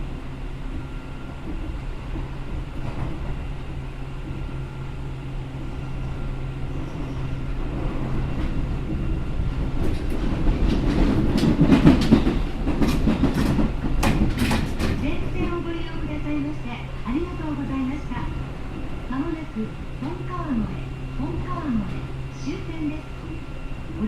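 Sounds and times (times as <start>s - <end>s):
electric train running hum: 0.0s - 24.0s
wheels clattering over rail joints: 7.7s - 15.7s
faint steady tones: 15.0s - 24.0s.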